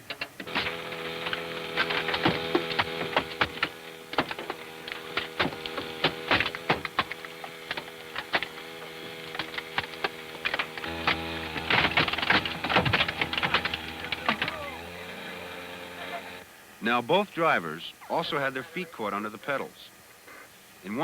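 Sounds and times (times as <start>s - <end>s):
sharp clicks and metallic knocks: 0.0s - 16.4s
steady machine hum: 0.0s - 21.0s.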